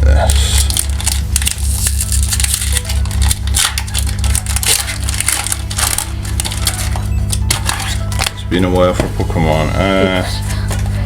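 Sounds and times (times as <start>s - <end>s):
foil wrapper crinkling: 0.2s - 8.8s.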